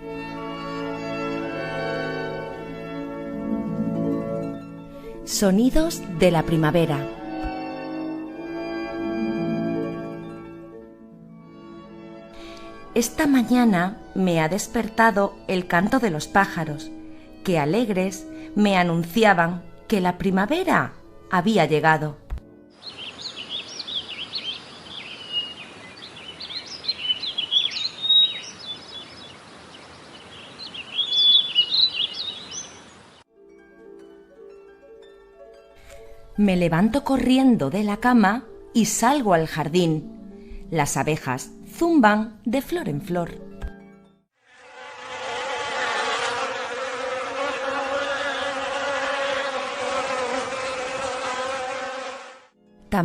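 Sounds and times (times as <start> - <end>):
songbirds chirping and warbling: 22.8 - 33.2
bees buzzing: 44.5 - 52.6.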